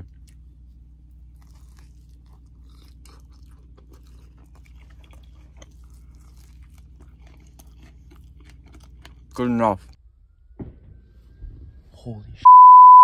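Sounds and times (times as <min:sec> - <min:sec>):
person chewing food: 0:00.0 - 0:10.0
steady low hum: 0:00.0 - 0:13.0.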